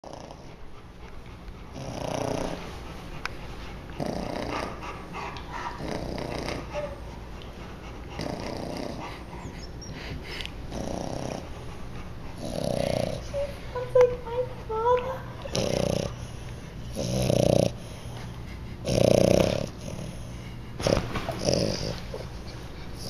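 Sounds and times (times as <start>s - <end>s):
dog snoring: 0.0s - 0.5s, 1.7s - 2.7s, 4.0s - 4.9s, 5.7s - 7.0s, 8.2s - 11.6s, 12.4s - 13.5s, 15.4s - 18.2s, 18.8s - 22.3s.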